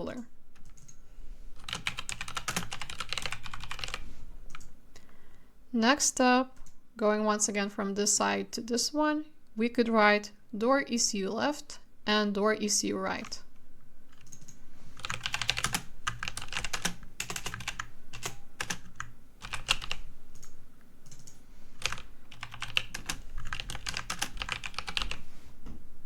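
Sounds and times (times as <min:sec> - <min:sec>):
computer keyboard typing: 0:00.5 - 0:01.0, 0:01.6 - 0:04.8, 0:14.1 - 0:25.2.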